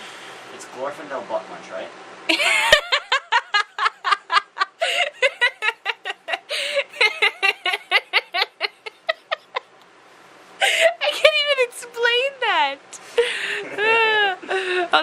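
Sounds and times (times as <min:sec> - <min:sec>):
person laughing hard: 0:02.3 - 0:09.7, 0:13.2 - 0:14.9.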